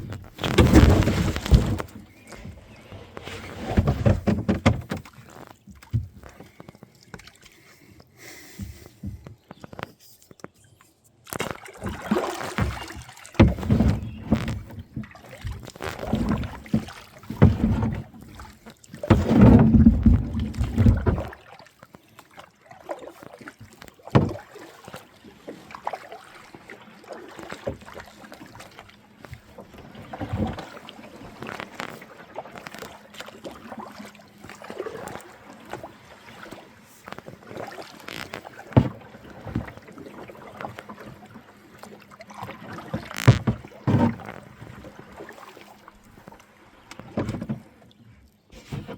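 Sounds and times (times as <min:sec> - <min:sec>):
thuds on kayak hull: 0:00.0 - 0:06.3, 0:11.4 - 0:21.4, 0:24.0 - 0:24.5, 0:42.9 - 0:44.8, 0:46.9 - 0:47.7
water sloshing: 0:00.0 - 0:48.9.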